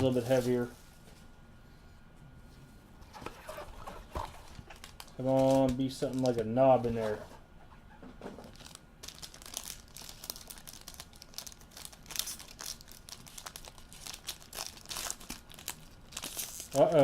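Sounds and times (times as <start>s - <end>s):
packaging wrapper crinkling: 3.8s - 6.5s, 8.4s - 17.0s
wrapper tearing: 4.2s - 6.4s, 8.4s - 17.0s.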